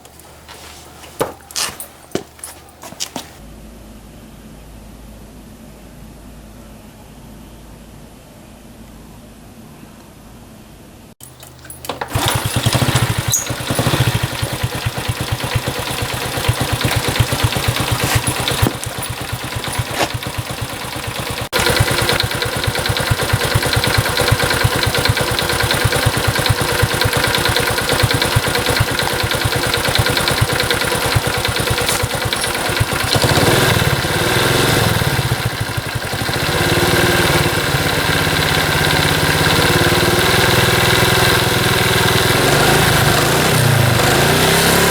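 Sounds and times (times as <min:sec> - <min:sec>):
small motorcycle engine running: 0:00.0 - 0:03.4, 0:11.2 - 0:44.9
engine ticking: 0:11.2 - 0:44.6.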